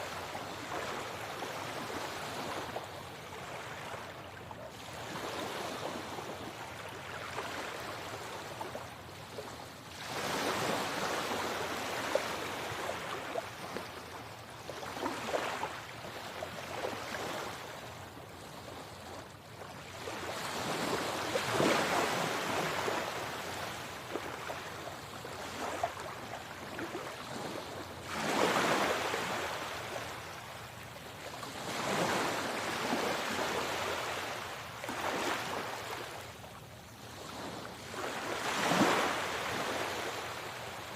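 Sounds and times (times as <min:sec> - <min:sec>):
sea waves breaking: 0:09.9 - 0:13.9, 0:19.7 - 0:36.3, 0:37.2 - 0:40.9.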